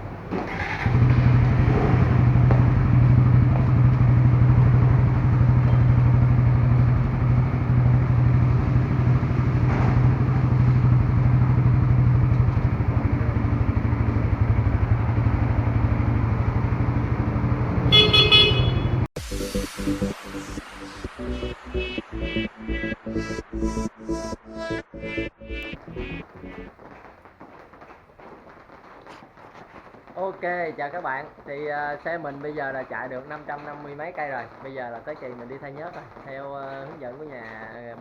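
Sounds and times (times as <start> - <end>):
horn honking: 0.0 - 19.1
motorcycle engine running: 0.0 - 19.1.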